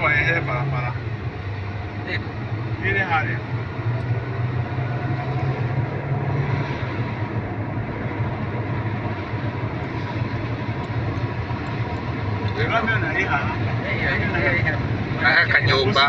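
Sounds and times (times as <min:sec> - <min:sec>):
road and tyre noise: 0:00.0 - 0:16.0
vehicle engine rumble: 0:00.0 - 0:16.0.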